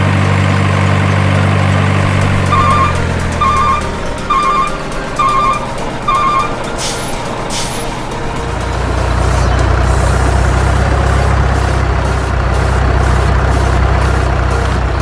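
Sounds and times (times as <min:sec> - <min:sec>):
truck engine rumbling: 0:00.0 - 0:15.0
truck reversing beep: 0:00.0 - 0:15.0
air brake hisses: 0:06.7 - 0:08.4.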